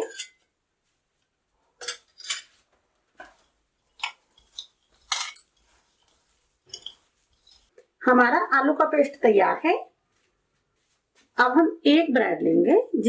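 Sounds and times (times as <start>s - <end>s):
spoon scraping a bowl: 0.0s - 0.5s, 3.2s - 7.8s.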